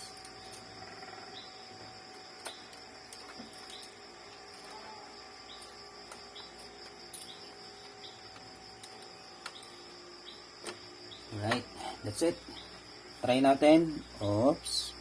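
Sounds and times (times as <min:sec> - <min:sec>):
insects chirping: 0:00.0 - 0:15.0.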